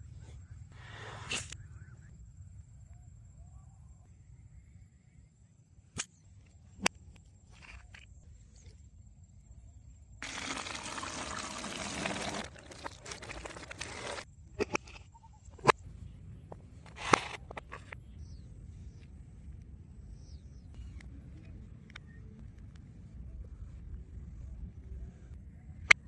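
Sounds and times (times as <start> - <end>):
water pouring: 10.2 - 14.2.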